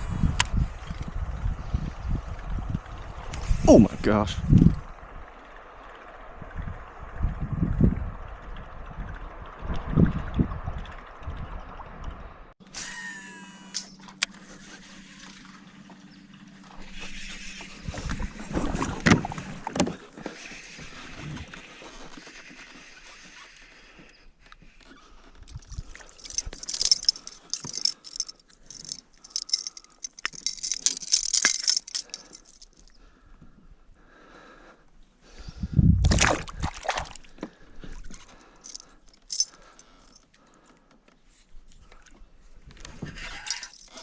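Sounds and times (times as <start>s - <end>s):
metallic jingling and clicking: 13.8s - 14.0s, 25.5s - 32.9s, 38.6s - 40.3s, 43.4s - 44.0s.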